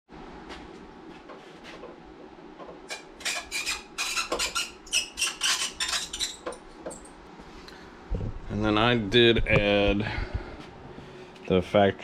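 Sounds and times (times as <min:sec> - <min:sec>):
plastic scrapes and squeaky rubs: 0:02.9 - 0:06.6.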